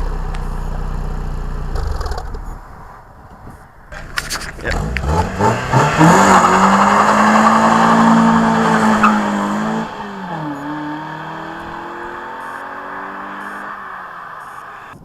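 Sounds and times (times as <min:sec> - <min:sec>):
car engine revving: 0:03.9 - 0:15.0.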